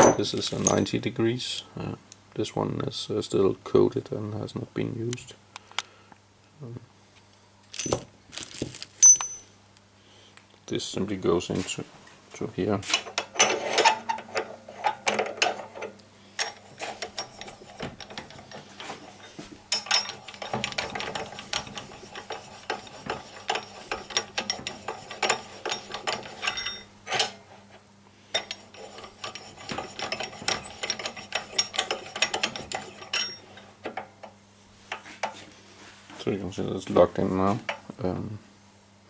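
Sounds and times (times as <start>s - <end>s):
metal parts clicking and scraping: 0.0s - 0.9s, 7.7s - 9.5s, 12.9s - 27.4s, 28.3s - 33.5s.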